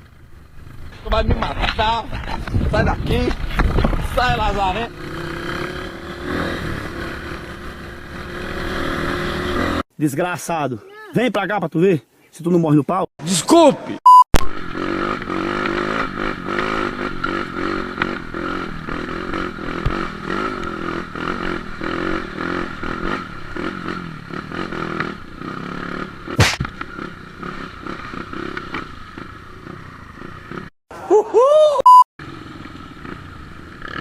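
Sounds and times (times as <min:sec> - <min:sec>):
dirt bike engine revving: 0:03.6 - 0:09.8, 0:14.5 - 0:30.7
sharp knock: 0:26.4 - 0:26.7.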